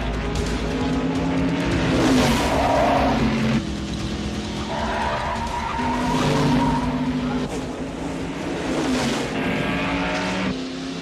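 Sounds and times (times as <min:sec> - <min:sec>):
race car engines at full speed: 0:00.0 - 0:11.0.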